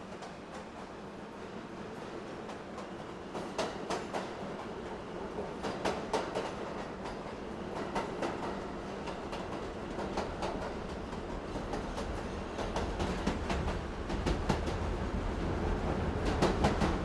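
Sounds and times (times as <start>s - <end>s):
subway train rumble: 0.0s - 17.0s.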